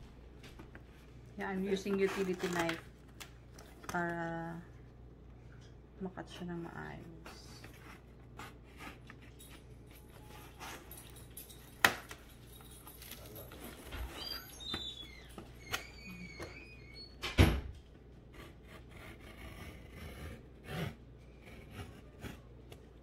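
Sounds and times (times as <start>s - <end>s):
knife cutting plastic packaging: 1.6s - 3.2s.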